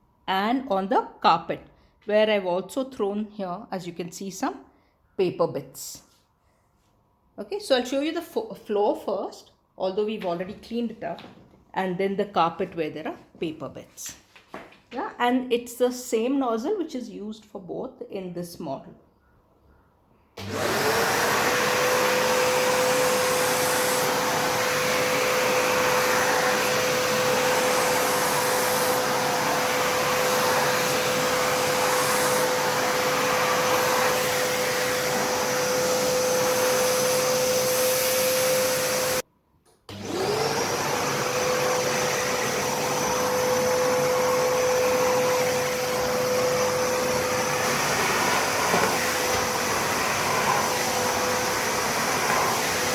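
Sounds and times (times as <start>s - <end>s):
vacuum cleaner motor whining: 20.4s - 39.2s, 39.9s - 52.9s.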